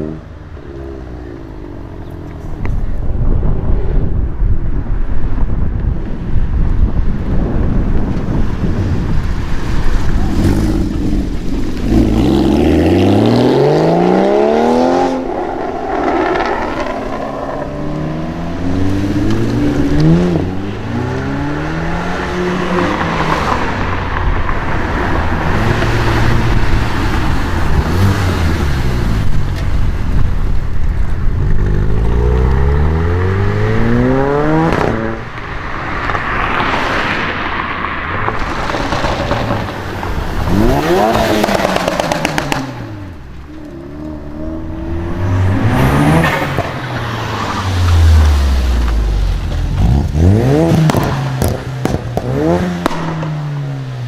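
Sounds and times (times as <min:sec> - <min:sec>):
sports cars accelerating past: 0:31.5 - 0:54.0.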